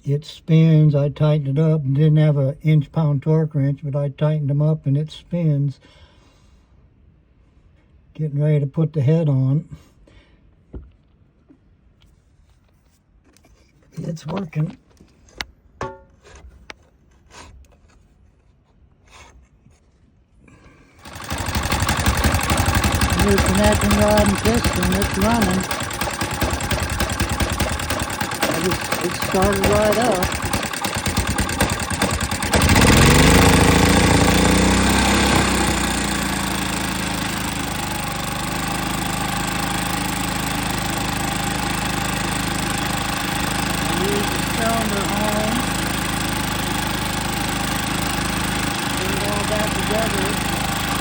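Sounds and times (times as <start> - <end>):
small engine running: 21.0 - 51.0.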